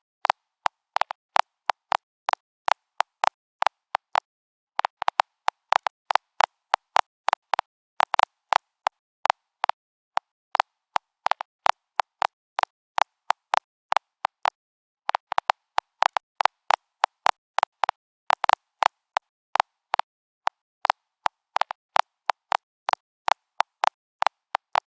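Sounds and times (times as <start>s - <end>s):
geiger counter clicking: 11.2s - 19.3s.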